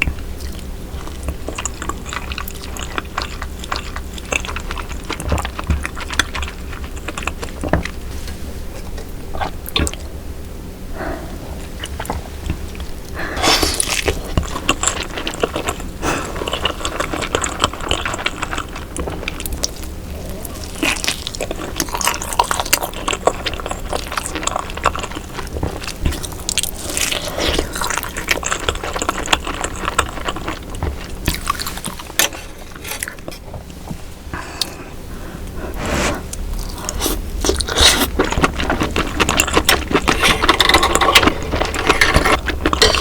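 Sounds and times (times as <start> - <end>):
wet chewing: 0.0 - 8.1, 11.0 - 43.0.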